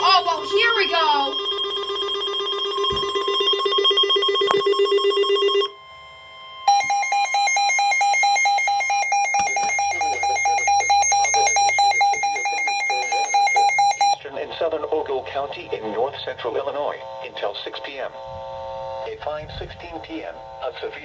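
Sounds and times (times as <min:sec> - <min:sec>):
warbling electronic alarm: 0:00.0 - 0:21.0
higher-pitched warbling tone: 0:09.1 - 0:14.2.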